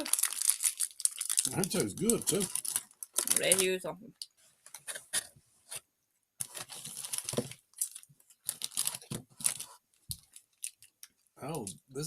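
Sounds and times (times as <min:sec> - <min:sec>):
cookie crunching: 0:00.0 - 0:03.7.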